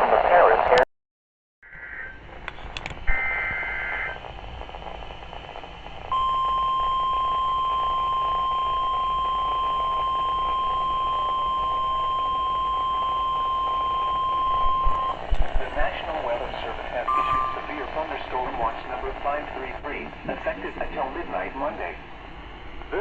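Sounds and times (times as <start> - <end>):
radio hiss: 0.0 - 0.8, 3.1 - 6.1, 13.7 - 23.0
steady warning alarm tone: 6.1 - 15.2, 17.1 - 18.9
warbling data tones: 17.1 - 19.1.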